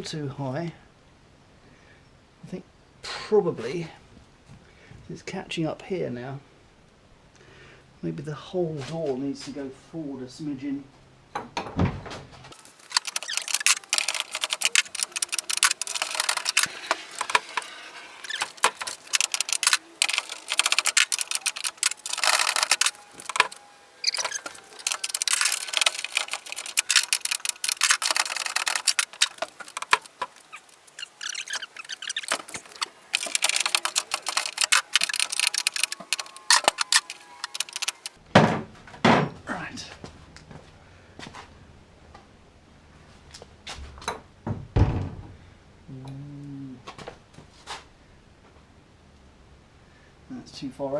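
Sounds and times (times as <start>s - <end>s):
ratchet spanner clicking: 12.6s - 38.2s.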